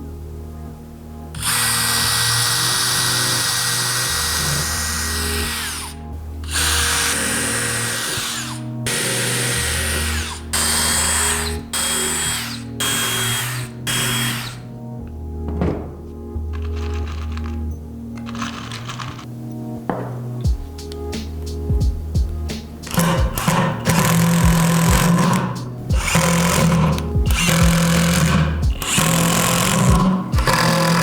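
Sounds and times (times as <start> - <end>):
electric drill running: 1.4 - 14.9, 16.5 - 19.3, 22.9 - 31.0.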